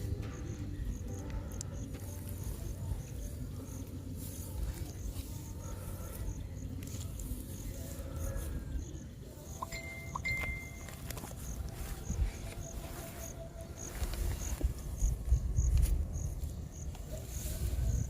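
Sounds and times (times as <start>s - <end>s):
insects chirping: 0.0s - 18.0s.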